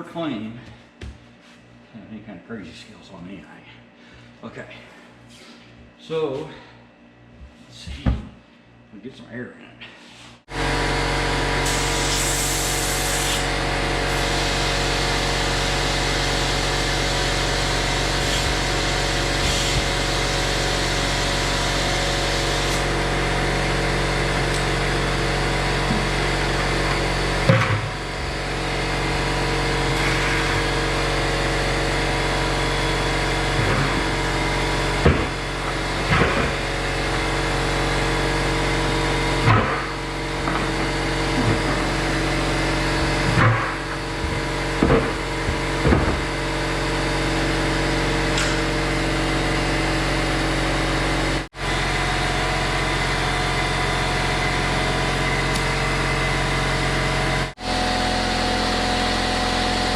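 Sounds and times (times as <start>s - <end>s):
air compressor running: 10.0s - 59.9s
short air bursts: 11.6s - 15.4s, 16.2s - 22.9s.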